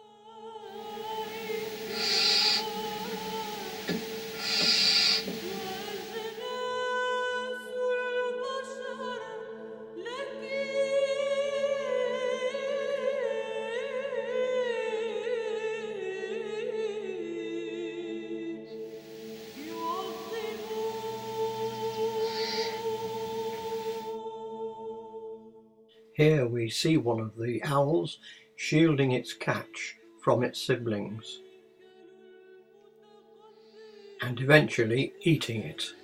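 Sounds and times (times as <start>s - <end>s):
background music with singing: 0.0s - 27.0s, 27.7s - 36.0s
owlets hissing snore calls: 0.7s - 6.5s, 18.7s - 24.2s.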